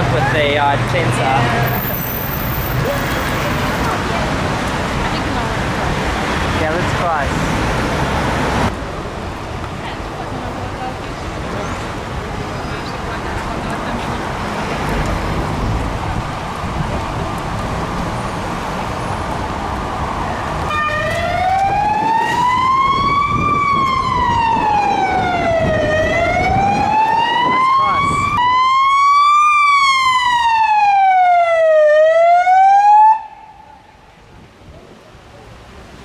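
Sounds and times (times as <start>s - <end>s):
street noise: 0.0s - 36.0s
wind: 0.0s - 36.0s
emergency siren wailing: 20.2s - 34.0s.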